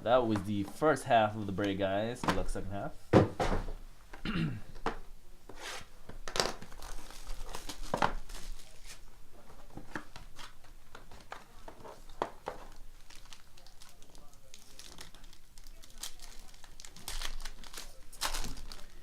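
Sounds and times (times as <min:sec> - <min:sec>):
plastic wrapping tearing and crinkling: 0:06.2 - 0:09.1, 0:11.5 - 0:19.0.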